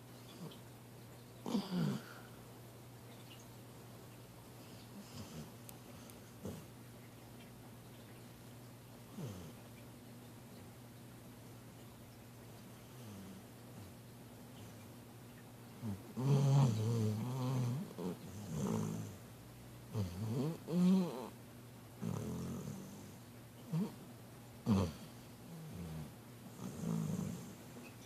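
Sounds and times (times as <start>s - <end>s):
dog snoring: 4.9s - 6.7s, 9.1s - 9.6s, 12.8s - 13.9s, 15.8s - 19.2s, 19.9s - 21.4s, 22.0s - 24.0s, 24.6s - 27.6s.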